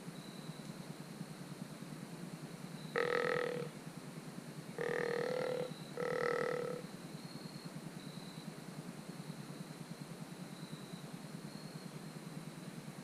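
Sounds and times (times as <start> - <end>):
deer grunting: 4.8 - 6.8.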